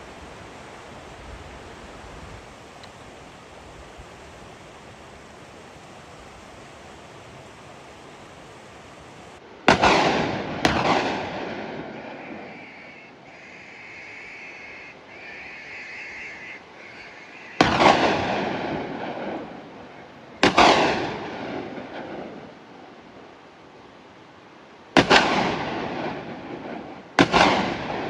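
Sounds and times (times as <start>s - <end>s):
echoing gunshots: 9.7s - 12.5s, 17.6s - 19.8s, 20.4s - 22.5s, 25.0s - 28.0s.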